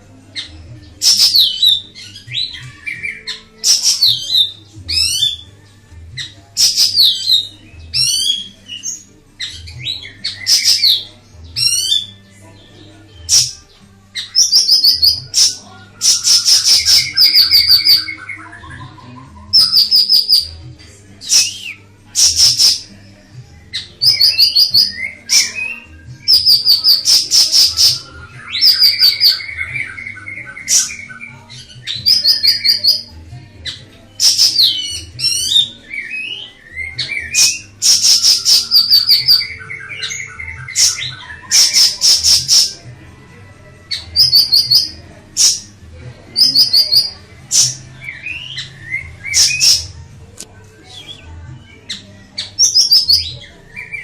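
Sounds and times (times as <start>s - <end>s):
bird chirping trills: 14.2s - 20.6s.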